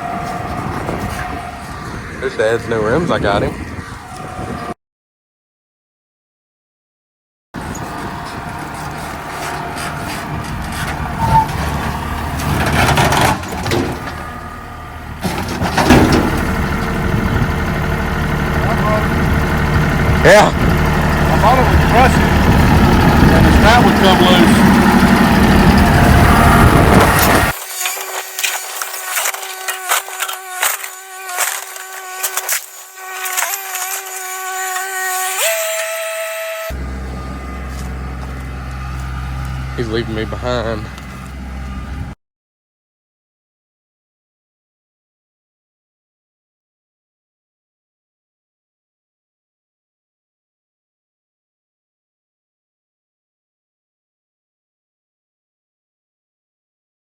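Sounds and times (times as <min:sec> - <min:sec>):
vehicle engine running: 0:07.6 - 0:27.6, 0:36.7 - 0:42.2
steady whine: 0:16.4 - 0:42.2
wooden boards cracking and splintering: 0:27.2 - 0:34.1.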